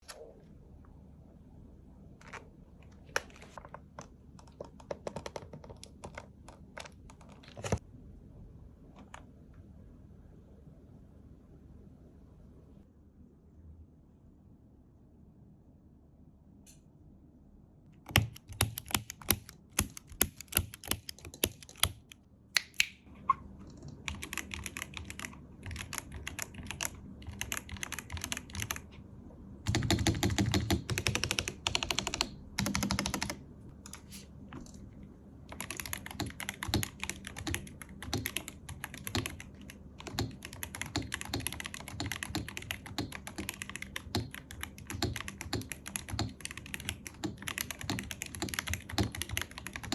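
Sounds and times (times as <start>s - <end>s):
mechanical keyboard typing: 2.2s - 7.8s, 18.0s - 22.2s, 23.6s - 28.9s, 29.7s - 34.0s, 35.5s - 49.9s.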